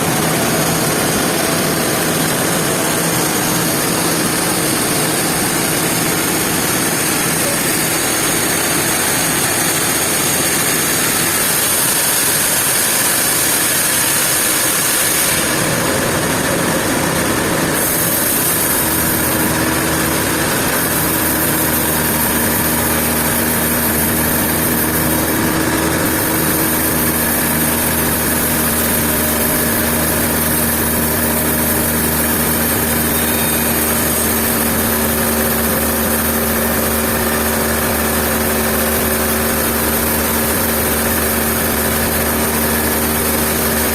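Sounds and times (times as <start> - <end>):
sawmill machinery drone: 0.0 - 43.9.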